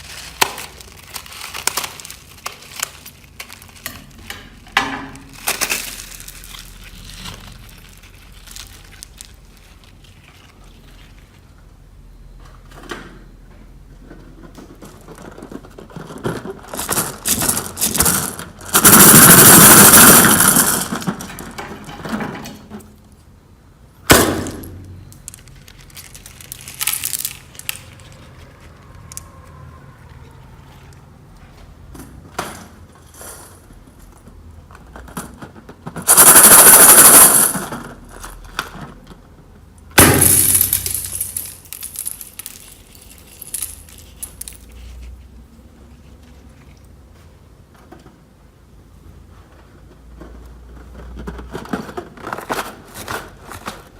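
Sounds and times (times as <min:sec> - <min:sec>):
slime squishing with crackles: 0:00.0 - 0:11.7, 0:25.0 - 0:31.1.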